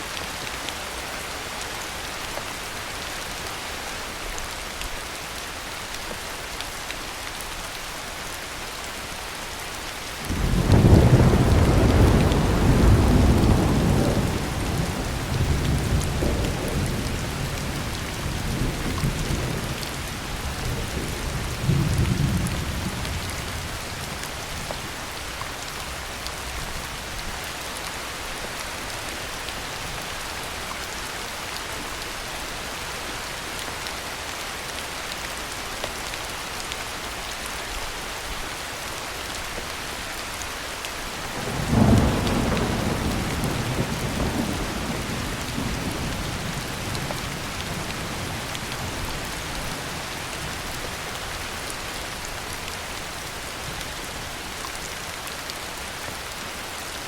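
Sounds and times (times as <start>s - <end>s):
heavy rain falling: 0.0s - 57.0s
thunder rumbling: 10.3s - 19.8s, 41.4s - 50.0s.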